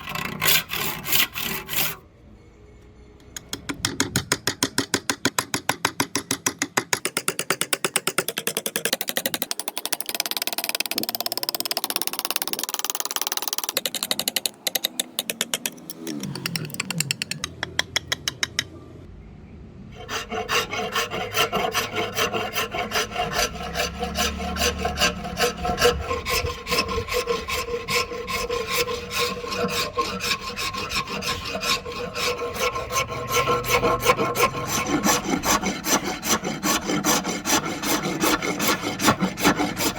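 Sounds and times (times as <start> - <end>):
hand tool scraping strokes: 0.0 - 2.0, 20.0 - 39.9.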